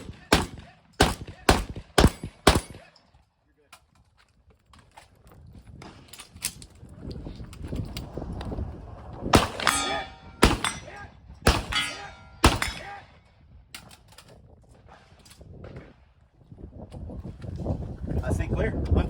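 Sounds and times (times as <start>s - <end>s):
shotgun shots: 0.0s - 2.9s, 9.3s - 13.1s
gun-handling noise: 9.4s - 12.9s, 13.7s - 15.9s
steel targets ringing: 9.4s - 13.0s.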